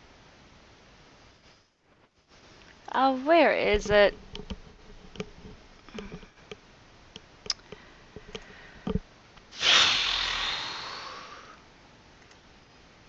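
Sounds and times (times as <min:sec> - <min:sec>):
breathy exhale: 0:09.6 - 0:11.6.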